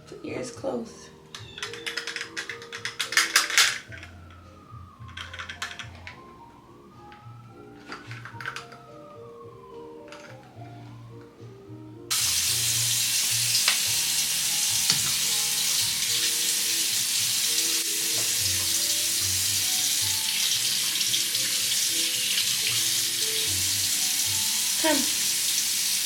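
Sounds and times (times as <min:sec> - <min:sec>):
faint background music with bass: 0:00.0 - 0:25.2
water running from a tap: 0:12.1 - 0:26.0.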